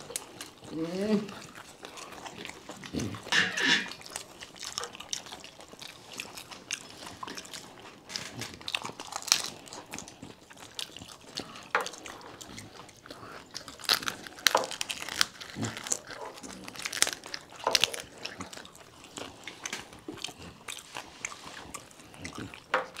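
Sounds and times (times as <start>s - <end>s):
wet chewing and slurping: 0.0s - 23.0s
crisp shells crunching: 13.6s - 18.8s.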